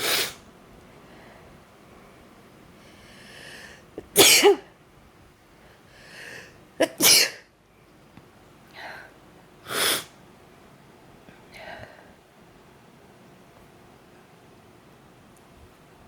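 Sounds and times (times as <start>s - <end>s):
woman drawing in breath: 2.8s - 3.9s, 5.6s - 6.6s
woman sneezing: 4.0s - 4.6s, 6.8s - 7.4s.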